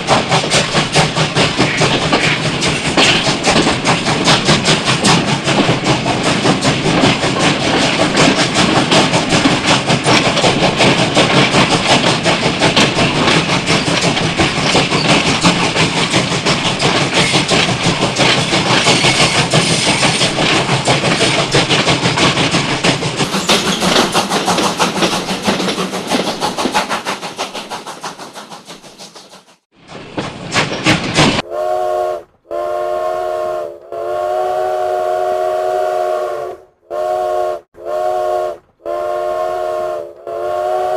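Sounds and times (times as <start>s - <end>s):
train wheels clickety-clack: 0.0s - 32.8s
train whistle chord: 31.4s - 40.9s.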